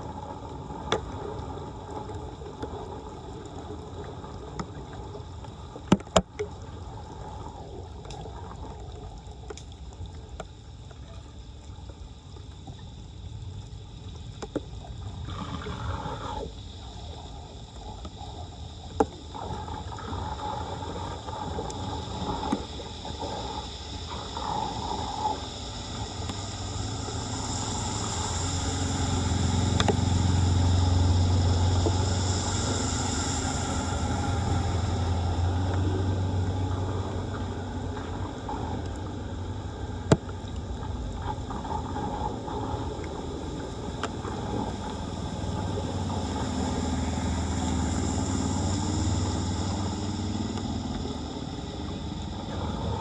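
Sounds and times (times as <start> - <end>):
water gurgling and trickling: 0.0 - 53.0
vehicle engine hum: 15.8 - 53.0.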